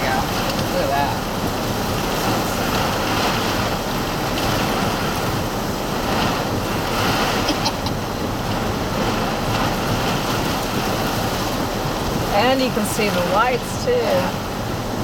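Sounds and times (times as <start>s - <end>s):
strong wind rushing: 0.0s - 15.0s.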